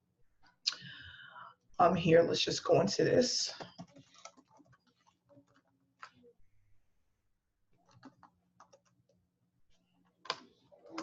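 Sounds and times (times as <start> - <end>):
computer keyboard clicks: 3.6 - 6.1, 7.8 - 9.1.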